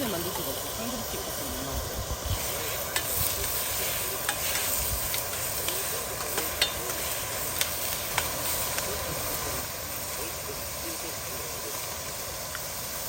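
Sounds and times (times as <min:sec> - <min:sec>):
food sizzling in a frying pan: 0:00.0 - 0:13.0
utensil clicking against pan: 0:02.9 - 0:09.3.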